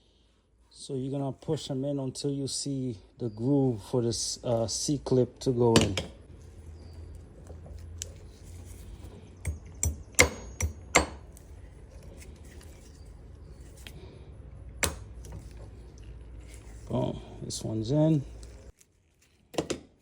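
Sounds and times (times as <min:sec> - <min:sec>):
low hum: 0:03.2 - 0:18.8.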